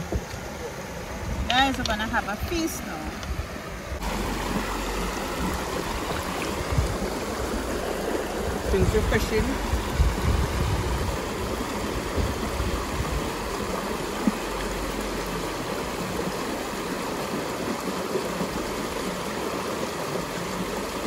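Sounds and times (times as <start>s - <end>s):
river flowing: 0.0s - 21.0s
low rumbling: 3.2s - 17.6s.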